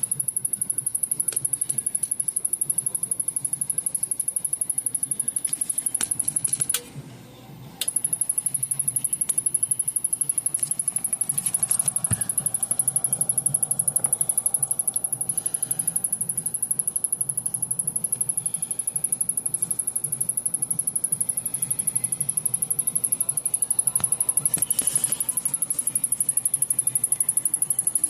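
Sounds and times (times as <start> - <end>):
high-pitched electrical ticking: 0.0 - 6.8, 7.8 - 28.0.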